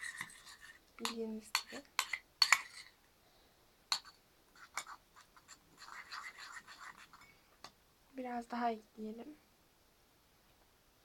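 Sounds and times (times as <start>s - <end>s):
spoon clinking and scraping plate: 0.0s - 3.0s, 3.9s - 7.3s.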